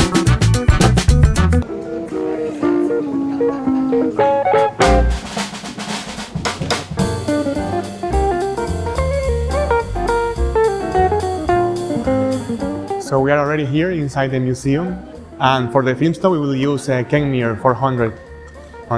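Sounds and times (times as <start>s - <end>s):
drum kit steady beat: 0.0s - 1.7s, 4.2s - 13.1s
plucked guitar: 0.0s - 13.1s.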